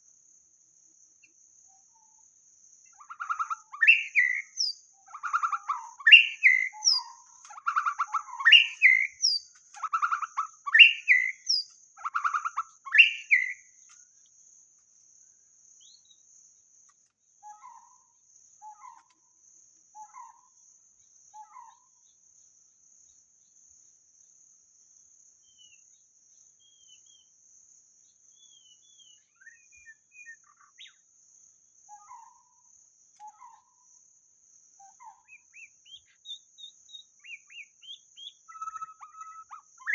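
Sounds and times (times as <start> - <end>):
bird singing whistled phrases: 3.0 - 13.6, 28.5 - 31.0, 35.3 - 39.9
faint high-pitched hiss: 20.6 - 39.9.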